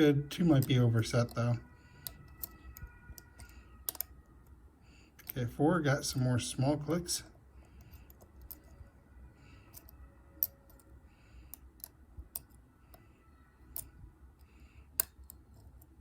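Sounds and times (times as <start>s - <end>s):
lock pick clicking on pins: 0.4s - 4.6s, 7.8s - 8.8s, 9.7s - 10.9s, 11.5s - 13.0s, 13.6s - 14.0s, 14.9s - 16.0s.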